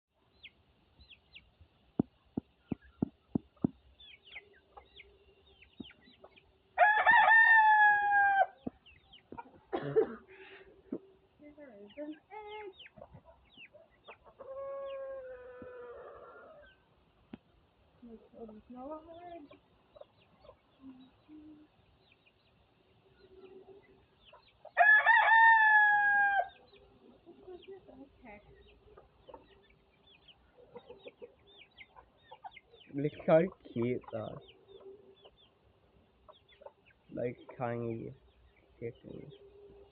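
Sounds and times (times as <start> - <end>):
chicken chirps and clucks: 0.2 - 9.7, 10.4 - 39.9
rooster crowing: 6.8 - 8.6, 24.8 - 26.6.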